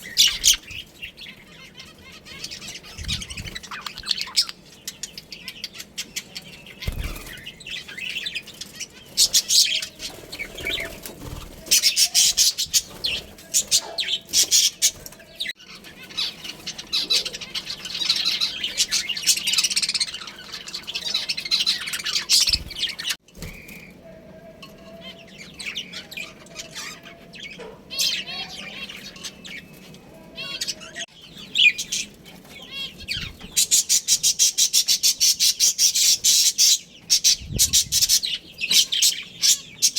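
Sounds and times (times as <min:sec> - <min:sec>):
budgerigars chattering: 0:00.0 - 0:23.2.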